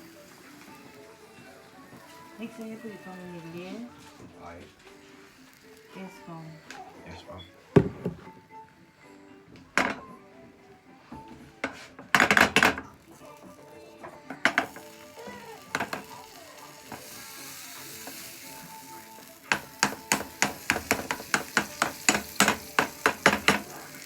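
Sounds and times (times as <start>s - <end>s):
batter sizzling in a frying pan: 0.0s - 7.2s, 9.7s - 24.0s
kitchen utensils clattering: 9.8s - 10.1s, 11.6s - 13.0s, 14.1s - 17.2s, 17.8s - 24.0s
utensil tapping a mixing bowl: 14.3s - 15.0s, 15.7s - 16.2s, 19.4s - 23.8s.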